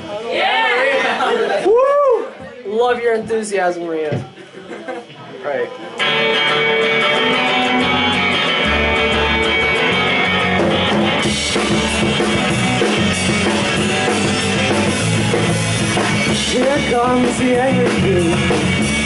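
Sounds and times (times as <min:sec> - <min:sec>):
rock band playing: 0:05.9 - 0:19.0
low bass: 0:06.1 - 0:19.0.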